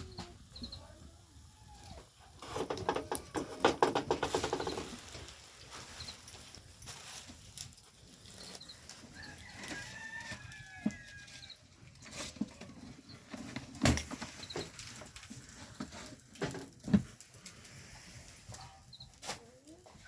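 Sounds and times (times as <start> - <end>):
knocks and thumps: 2.4 - 5.0.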